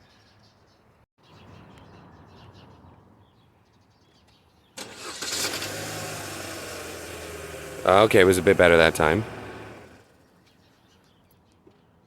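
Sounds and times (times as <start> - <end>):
bird chirps: 0.0 - 4.8, 10.2 - 12.0
engine starting and running: 4.8 - 10.2.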